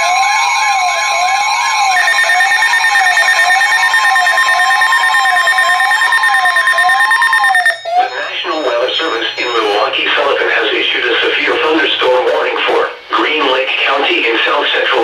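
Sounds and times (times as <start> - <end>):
sweeping siren-like alarm: 0.0 - 11.6
steady alarm tone: 0.0 - 15.0.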